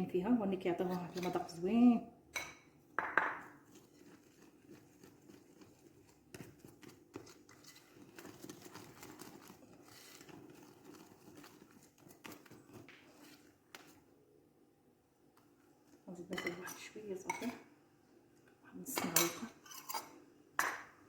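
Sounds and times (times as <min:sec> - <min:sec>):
utensil stirring batter in bowl: 0:00.7 - 0:01.7, 0:02.9 - 0:14.2, 0:18.4 - 0:20.4.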